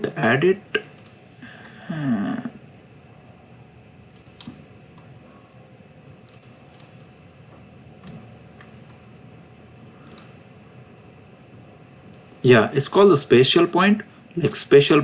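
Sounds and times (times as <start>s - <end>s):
low steady hiss: 0.0s - 15.0s
mouse and keyboard clicks: 6.3s - 6.9s, 10.1s - 10.3s.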